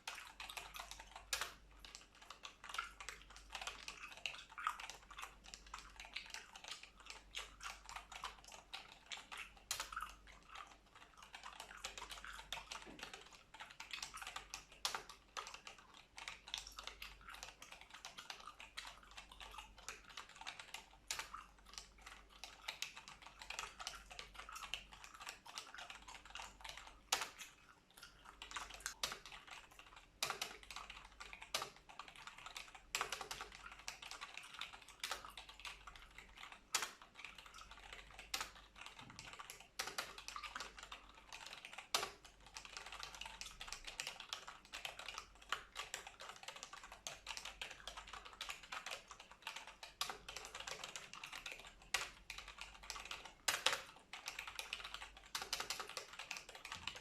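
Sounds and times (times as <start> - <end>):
gum chewing: 2.1 - 14.2, 17.0 - 22.6.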